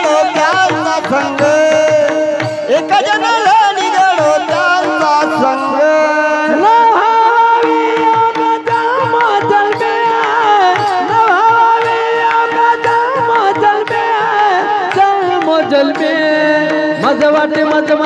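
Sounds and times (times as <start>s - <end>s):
voice singing wordless line: 0.0s - 8.4s.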